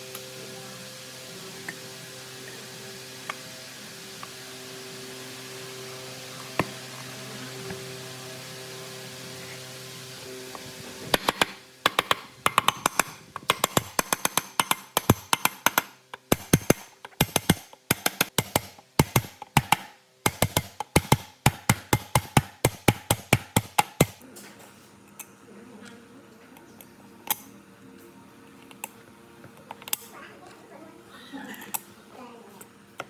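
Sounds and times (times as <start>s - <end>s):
sharp taps in bursts: 11.2s - 24.2s.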